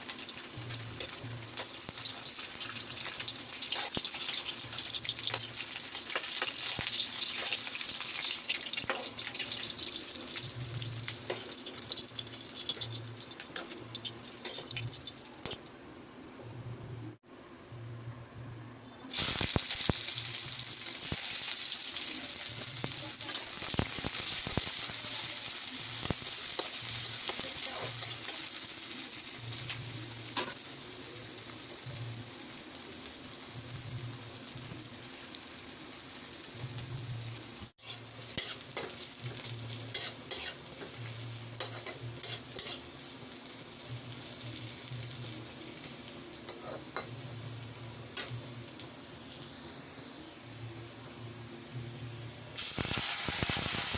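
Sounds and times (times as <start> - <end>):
food sizzling in hot oil: 0.0 - 15.8, 19.1 - 51.4, 52.3 - 53.9
spatula scraping pan: 37.8 - 39.0, 39.8 - 40.9, 41.6 - 42.9.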